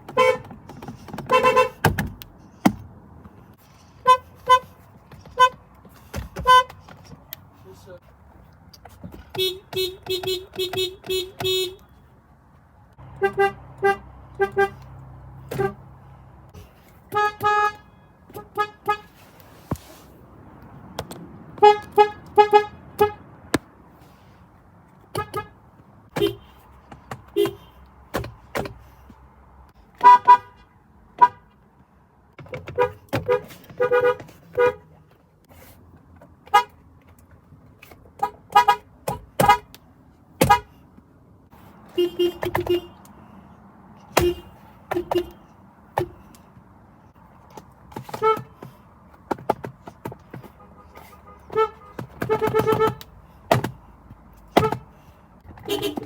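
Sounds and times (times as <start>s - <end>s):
car horns beeping: 0.0s - 2.8s, 4.0s - 7.0s, 9.1s - 12.0s, 13.0s - 15.9s, 16.5s - 19.2s, 21.6s - 23.3s, 25.1s - 28.8s, 29.9s - 31.5s, 32.4s - 35.0s, 36.4s - 36.8s, 37.8s - 39.8s, 40.4s - 40.8s, 41.6s - 43.2s, 44.0s - 46.3s, 47.8s - 48.8s, 49.5s - 53.8s, 54.4s - 56.0s.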